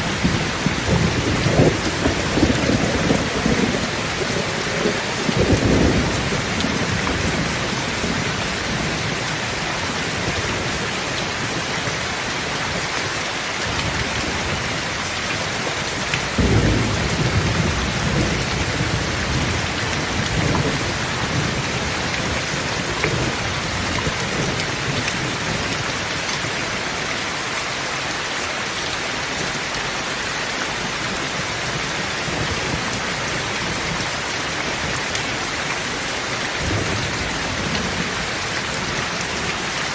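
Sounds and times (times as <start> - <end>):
thunder rumbling: 0.0 - 10.8, 16.2 - 26.1
steady rain falling: 0.0 - 39.9.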